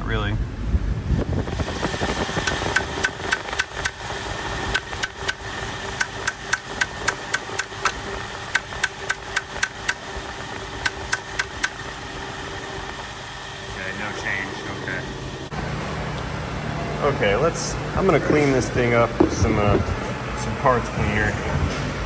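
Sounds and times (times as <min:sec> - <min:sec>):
car engine idling roughly: 0:01.2 - 0:15.5
sharp metallic tapping: 0:02.4 - 0:04.0, 0:04.7 - 0:05.4, 0:06.0 - 0:10.0, 0:10.8 - 0:11.8.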